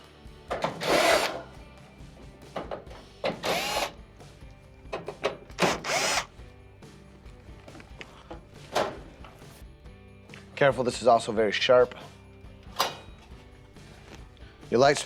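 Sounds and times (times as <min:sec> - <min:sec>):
cordless drill spinning screws: 0:00.8 - 0:01.4, 0:03.4 - 0:04.0, 0:05.6 - 0:06.3.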